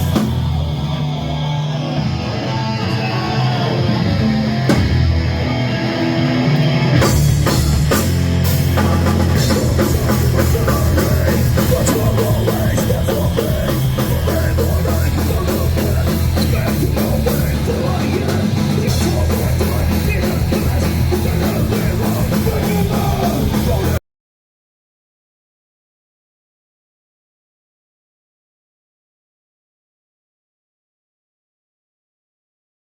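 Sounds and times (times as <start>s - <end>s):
hardcore band playing loud: 0.0s - 24.0s.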